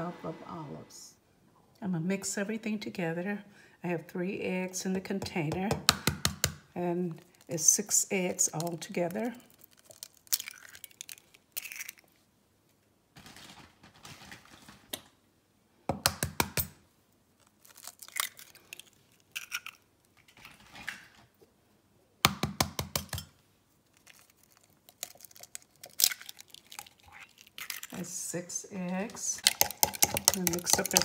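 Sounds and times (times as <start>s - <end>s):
eggs cracking: 5.7s - 12.2s, 17.4s - 21.1s, 22.3s - 28.2s, 28.8s - 31.0s.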